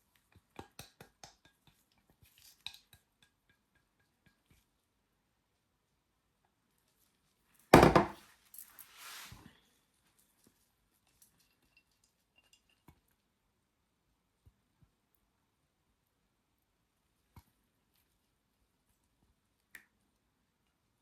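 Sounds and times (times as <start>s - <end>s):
equipment clattering on hard surface: 7.8s - 8.2s.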